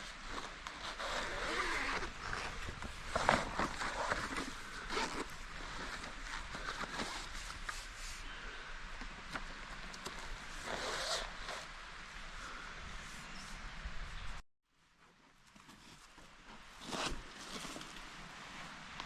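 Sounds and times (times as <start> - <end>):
gear rustling and scraping: 0.0 - 8.2.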